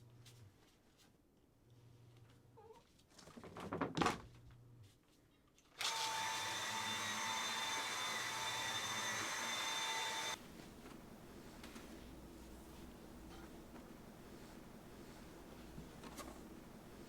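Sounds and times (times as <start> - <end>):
small electric motor whining: 5.8 - 10.4.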